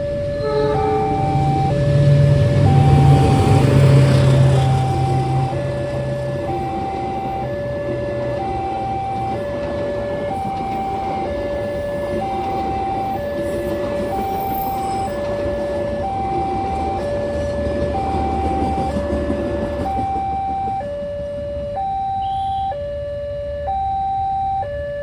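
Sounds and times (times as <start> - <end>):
low vehicle rumble: 0.0 - 13.4
two-tone level crossing alarm: 0.0 - 25.0.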